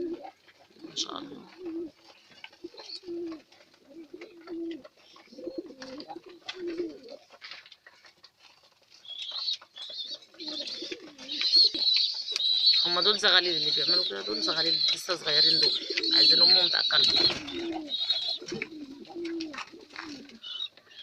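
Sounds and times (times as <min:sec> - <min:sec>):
pigeons cooing: 0:00.0 - 0:21.0
squabs squeaking: 0:09.0 - 0:20.8.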